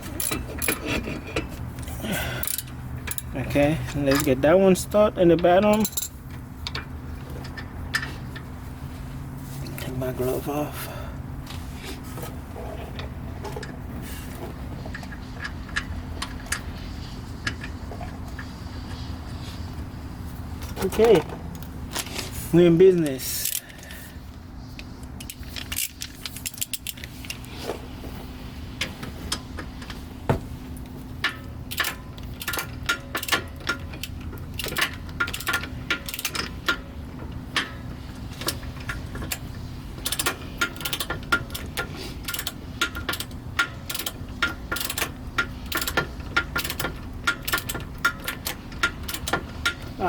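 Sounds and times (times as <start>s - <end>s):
hand ratchet clicking: 31.2s - 36.9s, 37.6s - 50.0s.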